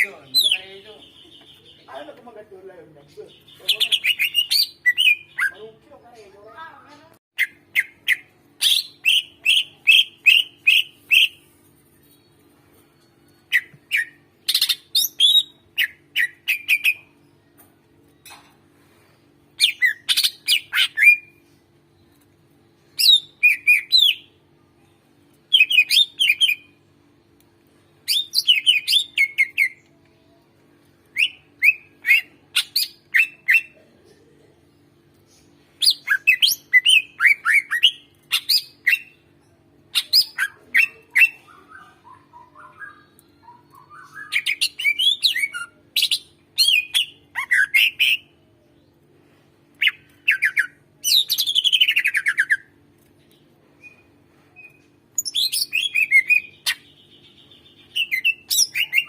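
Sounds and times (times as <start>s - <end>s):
bird chirping rapidly: 0.0s - 2.1s, 3.2s - 5.7s
faint steady hum: 0.0s - 59.0s.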